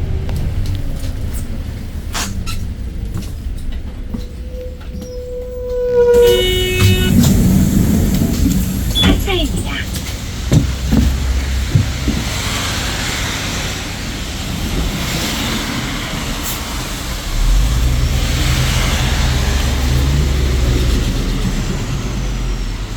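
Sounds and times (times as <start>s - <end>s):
bus engine running: 0.0s - 5.2s, 6.0s - 22.9s.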